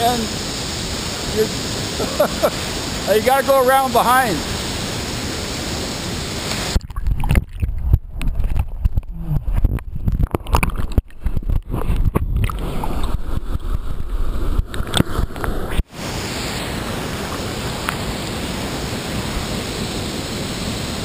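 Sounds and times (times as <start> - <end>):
waterfall rushing: 0.0 - 6.8, 12.6 - 21.0
water sloshing over microphone: 6.4 - 19.5.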